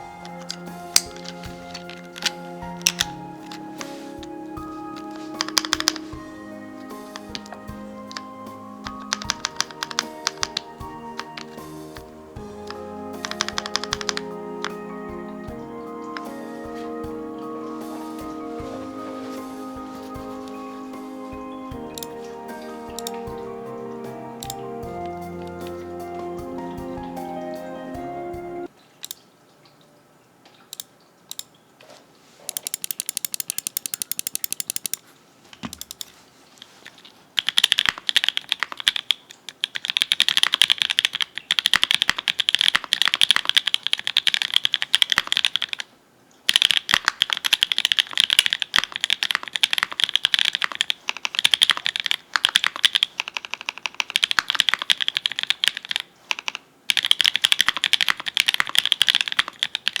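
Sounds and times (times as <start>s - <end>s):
typing on mechanical keyboard: 7.1s - 11.7s, 32.5s - 35.0s, 37.4s - 45.9s, 46.5s - 60.0s.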